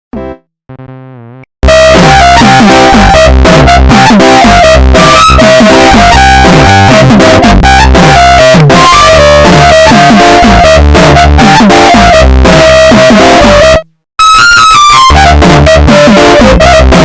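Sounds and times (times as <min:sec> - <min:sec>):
bass-boosted synth ringtone melody: 0:01.6 - 0:17.0.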